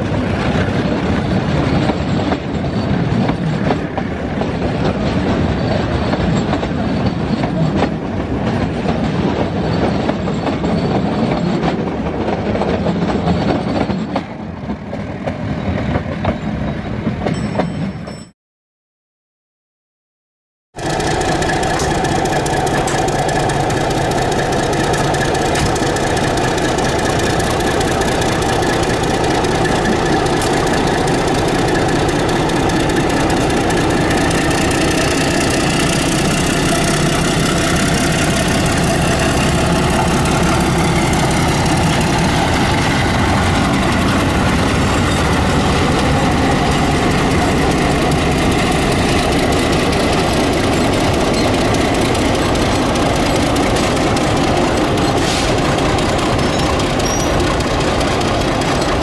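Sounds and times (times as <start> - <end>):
diesel locomotive engine idling: 20.8 - 59.0.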